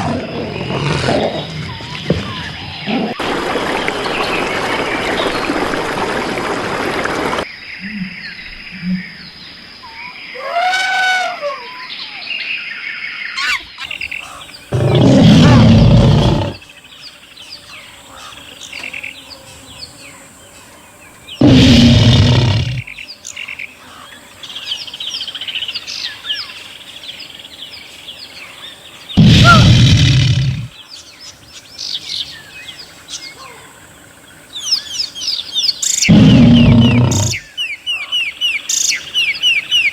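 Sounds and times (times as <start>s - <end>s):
loud animal roar: 0.0s - 1.8s, 14.7s - 16.6s, 21.4s - 22.9s, 29.2s - 30.7s, 36.1s - 37.4s
small birds chirping: 13.2s - 33.7s, 34.3s - 39.9s.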